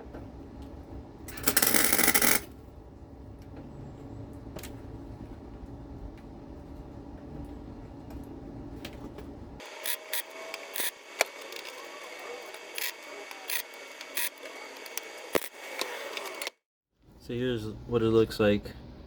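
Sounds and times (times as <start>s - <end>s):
welding arc crackling: 1.3s - 2.5s, 9.6s - 16.5s.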